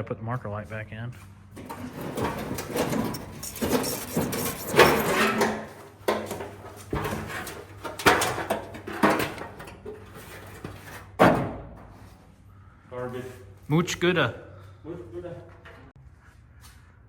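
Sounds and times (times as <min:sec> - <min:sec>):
truck body parts clattering: 0:01.6 - 0:11.9.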